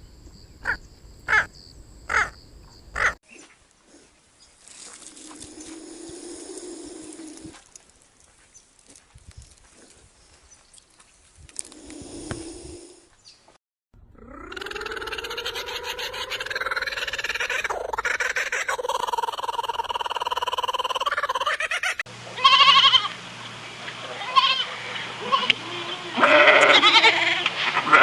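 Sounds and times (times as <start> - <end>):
drawn-out animal calls: 2.1 - 3.2
livestock bleating: 22.4 - 23.1, 24.2 - 28.0.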